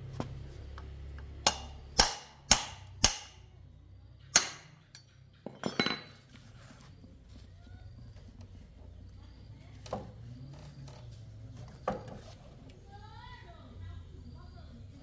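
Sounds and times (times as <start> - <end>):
hand tool striking metal: 1.4 - 3.4, 4.3 - 6.1.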